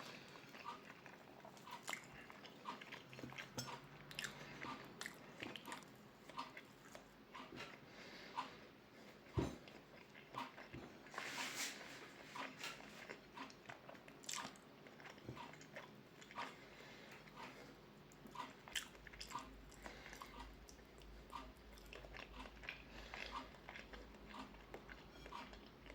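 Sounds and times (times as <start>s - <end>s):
person chewing: 0.1s - 25.9s.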